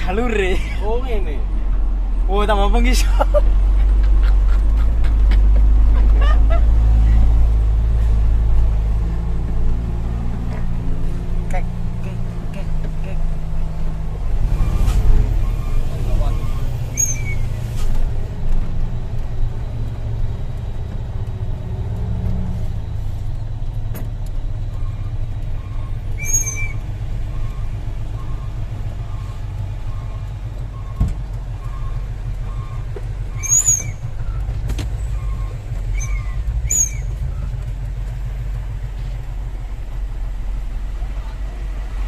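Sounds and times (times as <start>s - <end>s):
diesel truck engine droning: 0.0s - 42.0s
high squeaks: 14.4s - 17.9s, 24.8s - 26.9s, 32.5s - 34.4s, 35.0s - 37.4s
short beeps: 14.6s - 17.4s.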